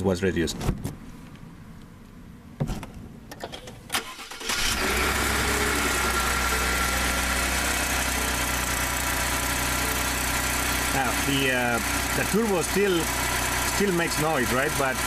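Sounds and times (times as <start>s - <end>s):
truck engine starting and idling: 3.3s - 15.0s.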